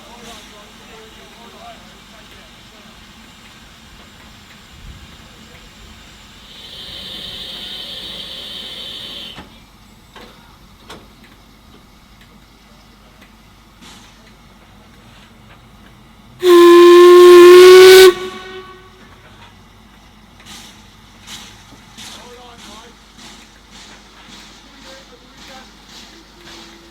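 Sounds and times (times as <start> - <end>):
steam hissing: 0.0 - 15.4, 16.3 - 26.9
steam whistle blast: 6.5 - 9.4, 16.4 - 19.1.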